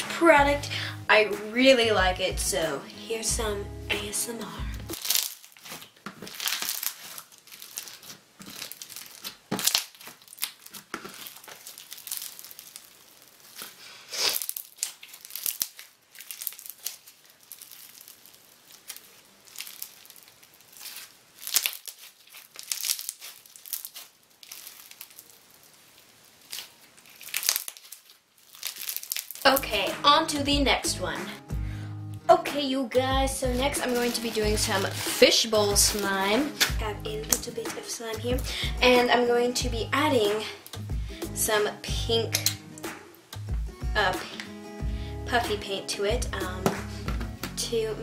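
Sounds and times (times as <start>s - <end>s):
foam beads crackling and popping: 4.2s - 30.8s, 32.1s - 41.0s, 41.6s - 43.4s.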